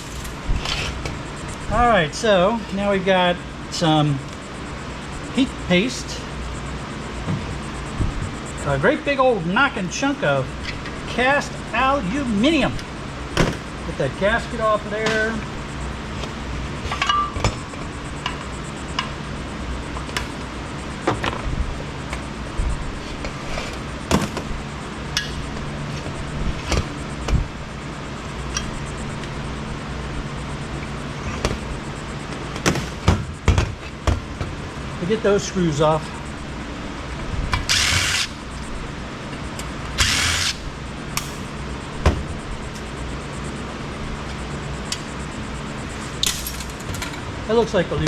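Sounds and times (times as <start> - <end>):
steady low hum: 0.0 - 48.0
power driver backing out screws: 37.7 - 38.3.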